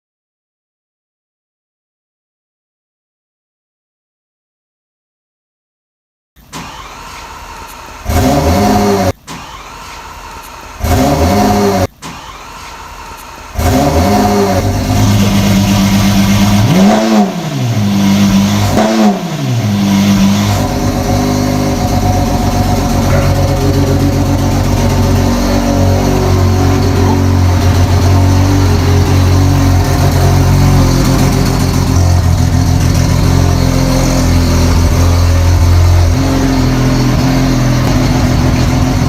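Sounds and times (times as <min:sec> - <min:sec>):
engine throttle blips: 0:06.4 - 0:39.0
sports car engine starting: 0:06.4 - 0:39.0
engine idling: 0:12.2 - 0:39.0.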